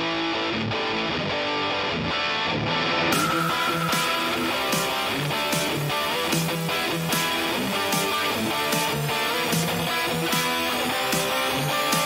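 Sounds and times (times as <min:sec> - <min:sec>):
strummed guitar music: 0:00.0 - 0:12.0.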